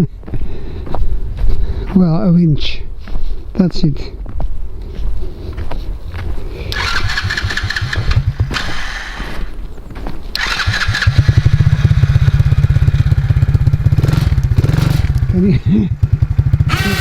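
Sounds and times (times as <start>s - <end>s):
engine idling: 6.5s - 9.7s, 10.3s - 17.0s
electric starter cranking: 6.7s - 9.6s, 10.3s - 15.3s, 16.5s - 17.0s.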